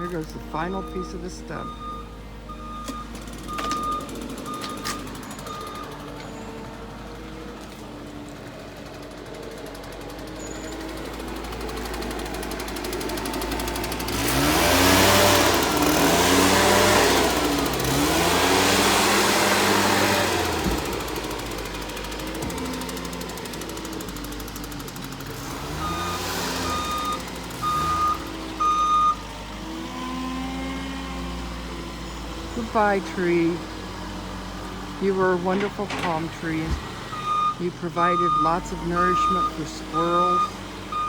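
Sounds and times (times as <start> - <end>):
bulldozer diesel engine: 0.0 - 41.0
reversing alarm beeping: 0.2 - 6.6, 25.7 - 29.2, 35.1 - 41.0.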